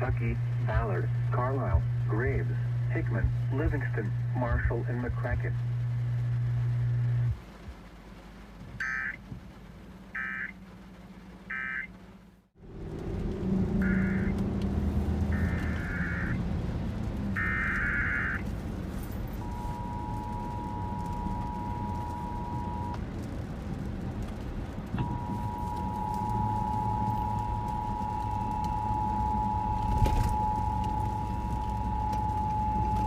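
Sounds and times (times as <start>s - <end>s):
steady low noise: 0.0s - 33.0s
two-tone attention signal: 19.4s - 23.0s, 25.0s - 33.0s.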